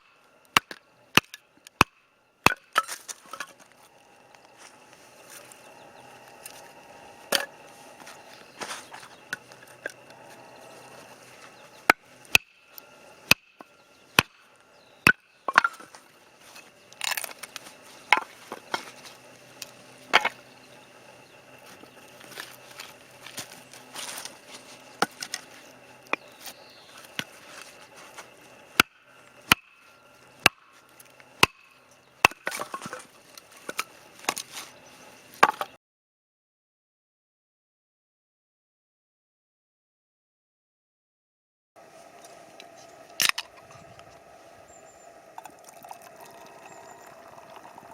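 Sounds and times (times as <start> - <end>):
axe chopping firewood: 0.5 - 3.5, 11.8 - 12.6, 13.2 - 14.5, 15.1 - 16.0, 25.0 - 25.5, 28.2 - 29.8, 30.4 - 30.7, 31.4 - 33.1.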